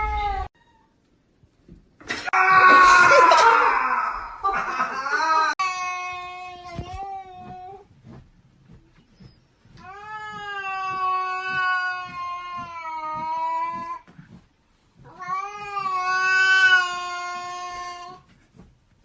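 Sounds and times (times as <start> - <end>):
cat yowling: 9.8 - 13.9, 15.1 - 18.2.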